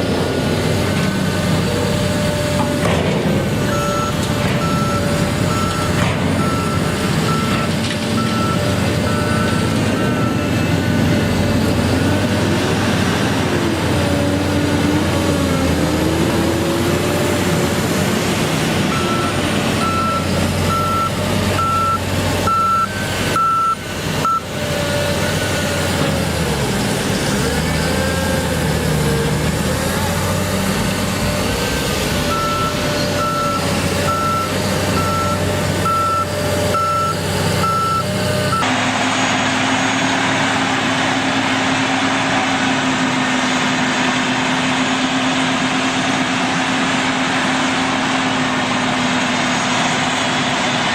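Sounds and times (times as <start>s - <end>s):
heavy machine engine under load: 0.0s - 50.9s
backup alarm beeping: 18.9s - 24.5s, 32.3s - 38.6s.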